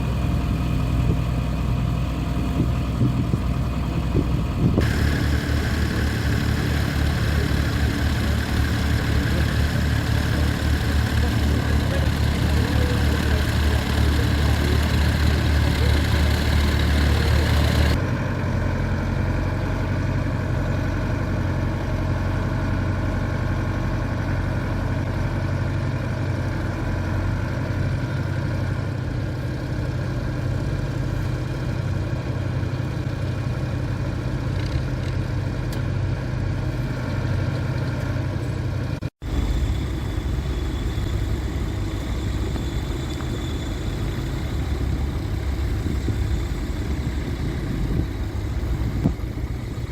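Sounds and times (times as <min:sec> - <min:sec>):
tractor engine running: 0:00.0 - 0:49.9.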